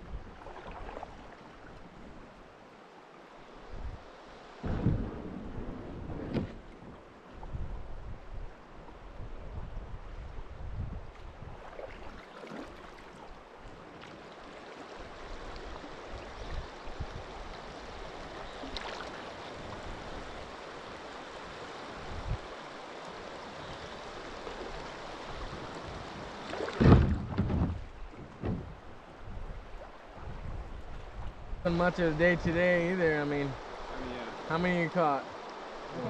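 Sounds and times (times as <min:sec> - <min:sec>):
river water rushing: 0:00.4 - 0:04.8, 0:11.6 - 0:27.2, 0:32.8 - 0:36.0
low thump: 0:04.6 - 0:06.6, 0:26.8 - 0:28.8.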